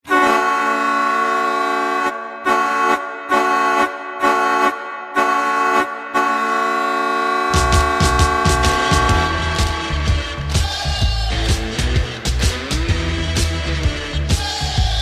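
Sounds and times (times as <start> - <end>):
goal horn blasts: 0.1 - 10.9.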